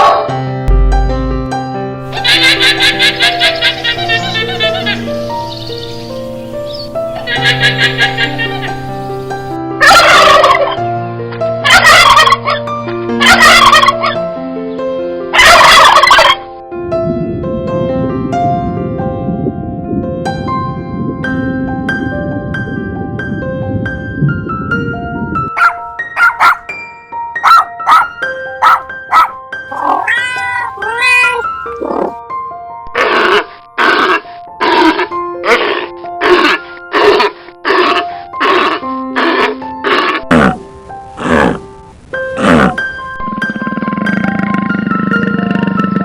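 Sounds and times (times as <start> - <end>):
soft piano music: 0.0 - 15.6, 16.3 - 33.0
animal calling in harsh bursts: 13.2 - 14.2, 15.4 - 16.4, 25.6 - 26.7, 27.4 - 32.2
domestic animal calling: 28.6 - 32.2.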